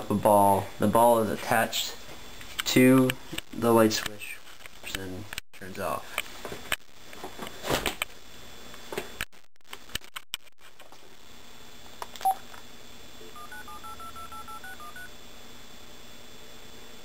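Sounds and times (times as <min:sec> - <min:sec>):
telephone keypad tones: 0:13.4 - 0:15.1.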